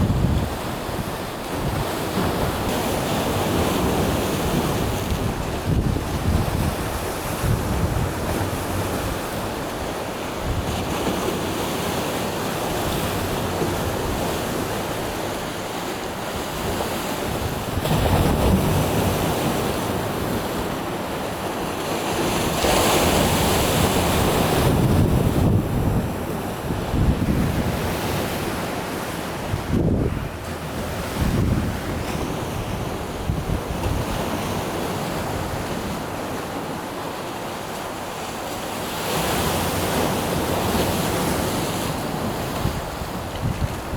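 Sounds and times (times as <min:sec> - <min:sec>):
wind buffeting microphone: 0:00.0 - 0:09.5, 0:23.1 - 0:35.9, 0:41.8 - 0:43.9
sea waves breaking on shore: 0:00.0 - 0:43.9.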